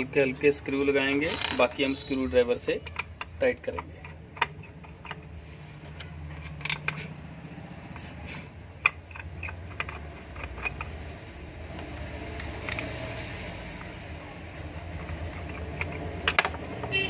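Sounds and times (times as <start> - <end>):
small screws clicking and tapping: 2.8 - 7.1, 8.8 - 11.0, 11.7 - 17.0.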